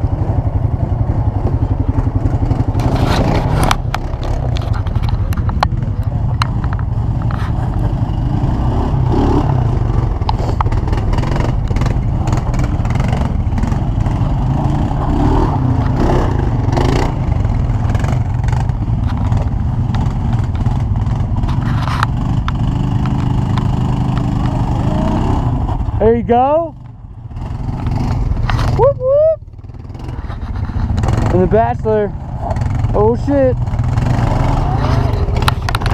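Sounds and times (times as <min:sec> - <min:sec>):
atv engine running: 0:00.0 - 0:35.9
knocks and rattles: 0:30.0 - 0:35.9.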